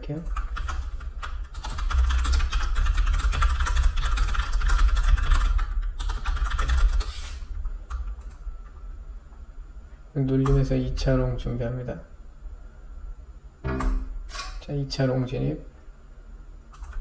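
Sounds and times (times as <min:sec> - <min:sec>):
rapid keyboard typing: 0:00.2 - 0:07.3, 0:16.7 - 0:17.0.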